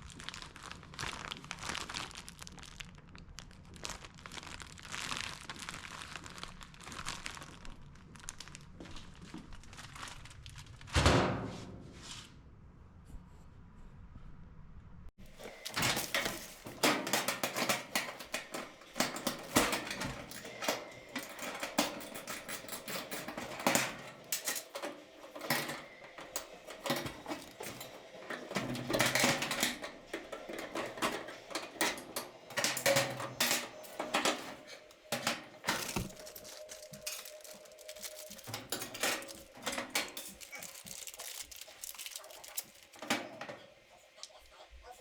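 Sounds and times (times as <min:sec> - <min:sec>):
tools and metal parts clattering: 0:15.2 - 0:44.2.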